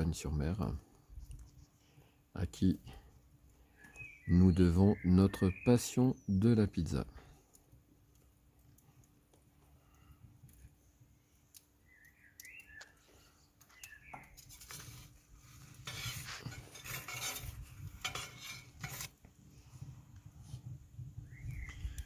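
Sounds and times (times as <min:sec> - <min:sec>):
bird chirps: 0:03.8 - 0:07.0, 0:11.8 - 0:14.4, 0:21.2 - 0:22.0
metal utensil scraping stone: 0:14.3 - 0:19.3.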